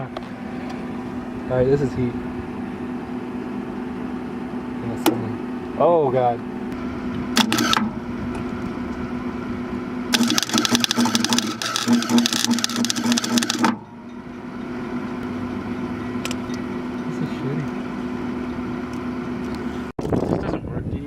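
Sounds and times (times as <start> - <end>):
steady hum: 0.0 - 21.0
welder arc crackling: 10.1 - 13.8.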